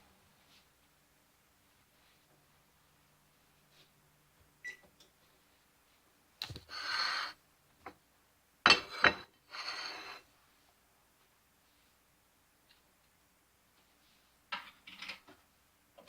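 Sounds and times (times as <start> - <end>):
kitchen knocks and clatters: 8.7 - 9.4, 14.5 - 15.4.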